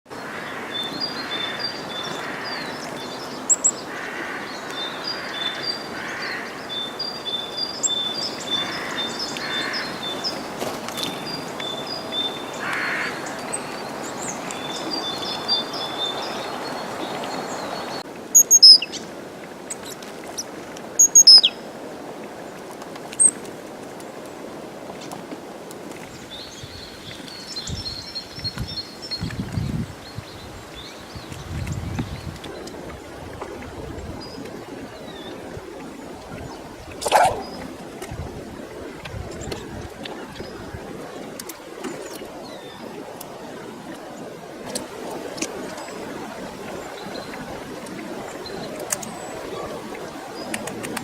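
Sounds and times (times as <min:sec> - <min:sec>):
birds calling: 0:00.2 - 0:19.1, 0:34.1 - 0:37.9.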